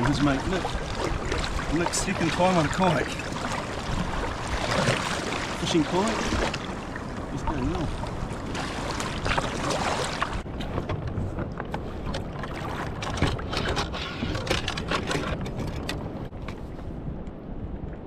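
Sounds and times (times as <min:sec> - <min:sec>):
short splashes or knocks: 0:00.0 - 0:13.9
water lapping around kayak: 0:00.0 - 0:18.0
wind on microphone: 0:00.0 - 0:18.0.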